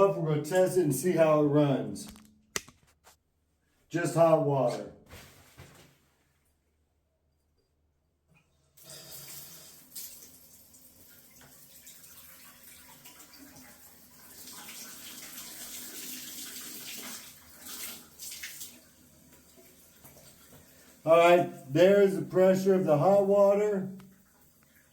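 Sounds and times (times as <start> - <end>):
water running into bathtub: 4.7 - 6.4, 8.8 - 24.9.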